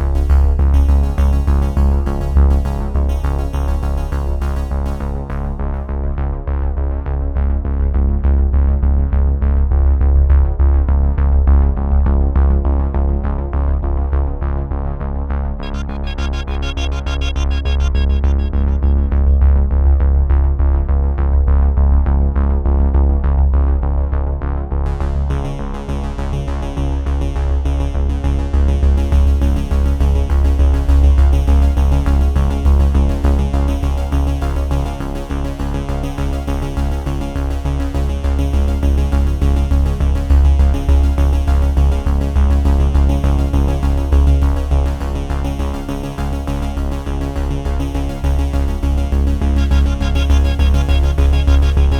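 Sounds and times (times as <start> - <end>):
electronic music with heavy bass: 15.6 - 20.6, 38.5 - 51.9.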